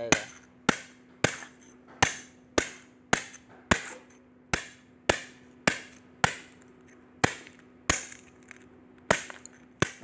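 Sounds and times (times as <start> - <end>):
hammer striking metal shell: 0.1 - 4.0, 9.1 - 10.0.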